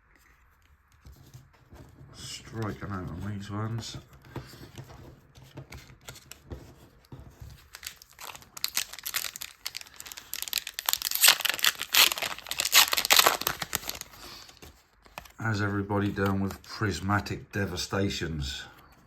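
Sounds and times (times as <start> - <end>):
foil wrapper crinkling and tearing: 7.6 - 15.4.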